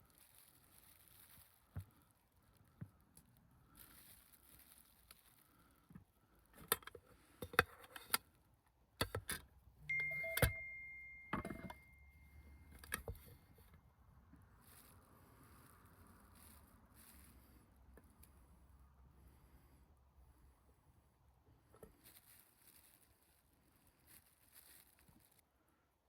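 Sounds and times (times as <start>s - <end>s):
metal item ringing: 9.9s - 12.2s
camp gear clicks and knocks: 11.3s - 11.8s, 12.7s - 13.8s.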